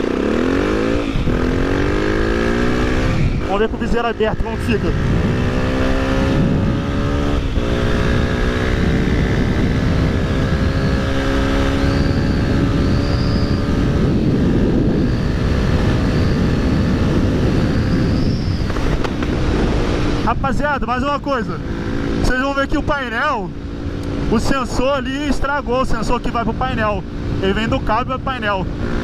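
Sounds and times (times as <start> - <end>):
motorcycle engine running: 0.0 - 29.0
wind rush: 0.0 - 29.0.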